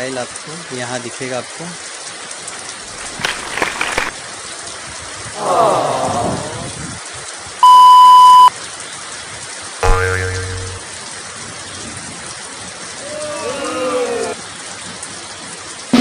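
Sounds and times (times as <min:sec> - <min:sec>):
loud censor beep: 0:07.6 - 0:08.5.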